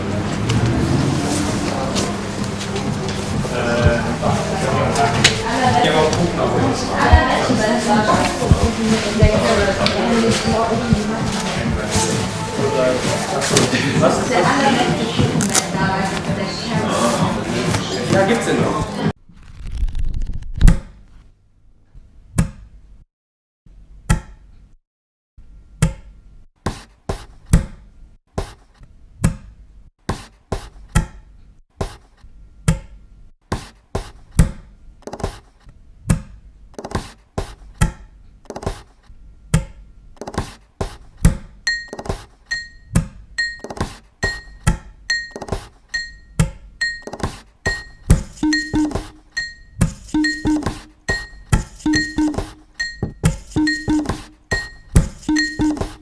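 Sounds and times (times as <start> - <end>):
percussive knocks and thuds: 49.8 - 56.0.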